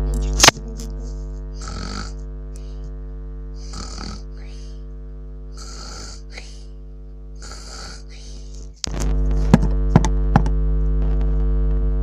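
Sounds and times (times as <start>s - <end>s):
loud electrical hum: 0.0s - 12.0s
hissing snore: 1.5s - 2.8s, 3.6s - 4.8s, 5.5s - 6.8s, 7.4s - 8.8s.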